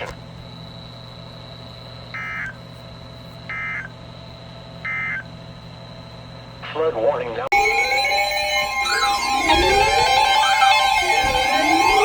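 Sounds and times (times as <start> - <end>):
faint high whine: 0.0 - 12.0
steady low hum: 0.0 - 12.0
buzzy digital data tones: 7.5 - 12.0.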